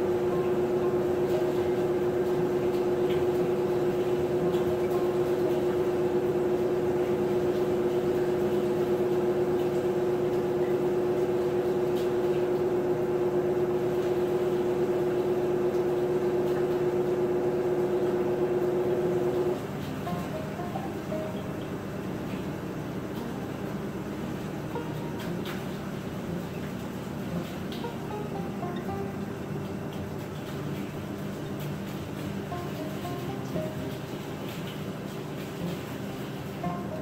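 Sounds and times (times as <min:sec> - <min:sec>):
washing machine motor hum: 0:00.0 - 0:37.0.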